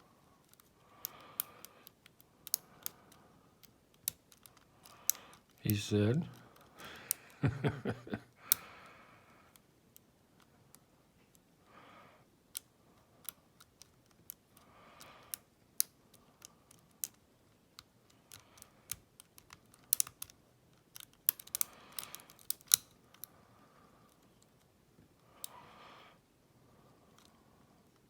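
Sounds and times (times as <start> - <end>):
lock pick clicking in lock: 0.4 - 3.0, 17.8 - 23.3.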